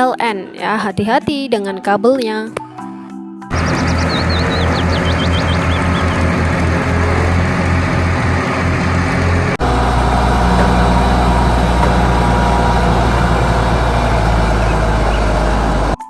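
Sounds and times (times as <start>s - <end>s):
truck engine idling: 3.5s - 16.0s.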